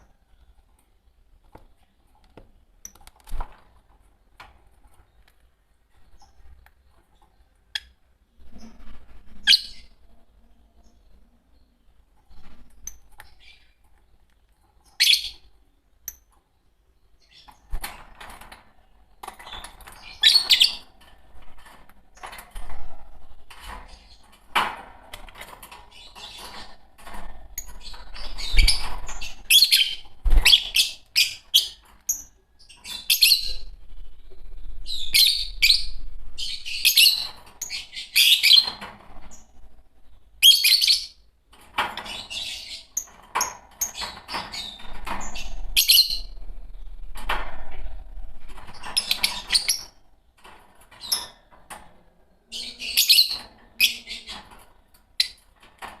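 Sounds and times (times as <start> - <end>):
lovebirds chirping shrilly: 43.8 - 46.4.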